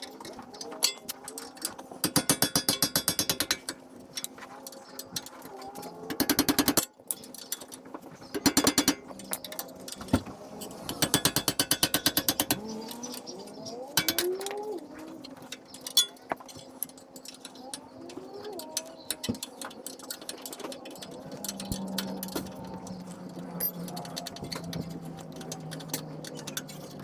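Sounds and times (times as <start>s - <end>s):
impact wrench hammering: 2.0s - 3.7s, 6.1s - 6.9s, 8.4s - 9.0s, 10.9s - 12.6s, 14.0s - 14.4s.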